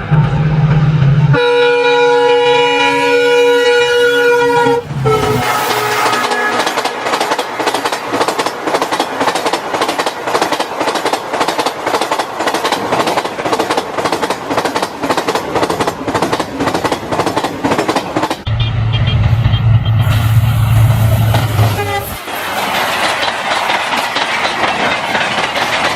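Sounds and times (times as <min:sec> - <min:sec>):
train wheels clattering on rails: 0:04.6 - 0:18.5, 0:21.0 - 0:25.9.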